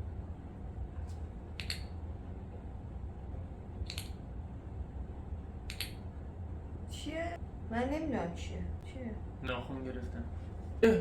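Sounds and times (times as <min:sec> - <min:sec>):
low steady hum: 0:00.0 - 0:11.0
nail clipper snipping: 0:03.9 - 0:04.2, 0:05.7 - 0:06.0.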